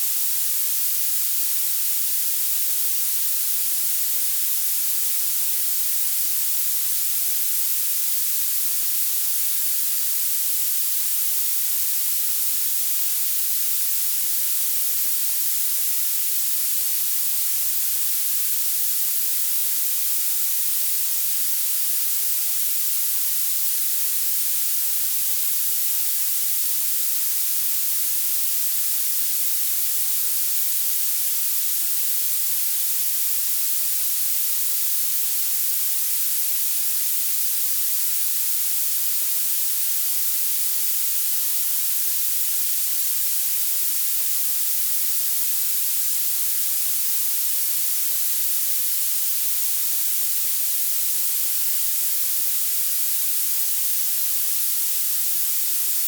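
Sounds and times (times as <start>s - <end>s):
thin high-pitched synthetic hiss: 26.3s - 56.0s.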